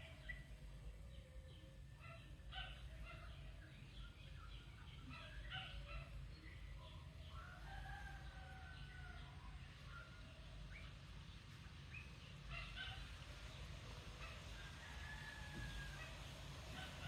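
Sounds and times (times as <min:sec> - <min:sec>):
junglefowl crowing: 0:14.2 - 0:17.0.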